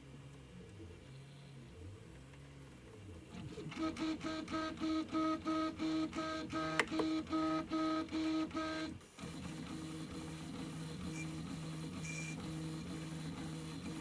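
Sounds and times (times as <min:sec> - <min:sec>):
sharp click: 0:06.7 - 0:07.1.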